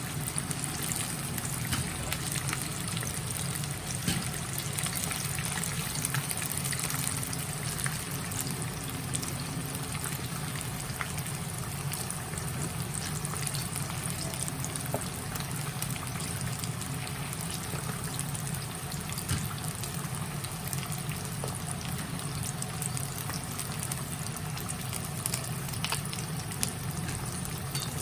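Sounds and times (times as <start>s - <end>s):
fish sizzling in hot oil: 0.0s - 28.0s
oil crackling and popping: 24.8s - 28.0s.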